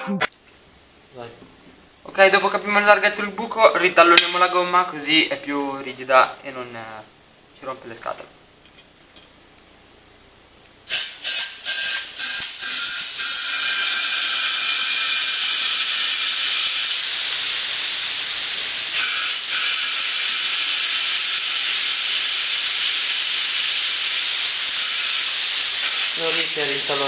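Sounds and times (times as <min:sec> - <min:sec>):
compressed air hissing: 0:10.9 - 0:27.0.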